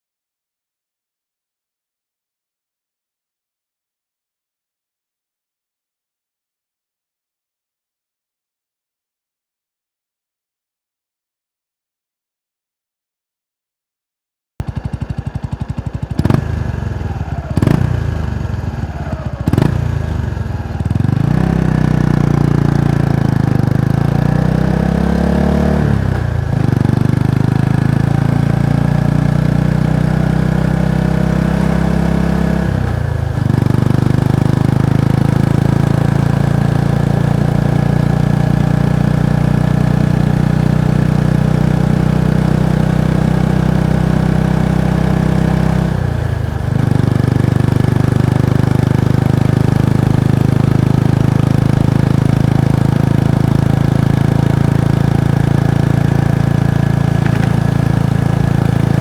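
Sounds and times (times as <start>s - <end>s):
motorcycle engine and exhaust: 14.6s - 59.0s
sharp engine knocks: 56.9s - 59.0s.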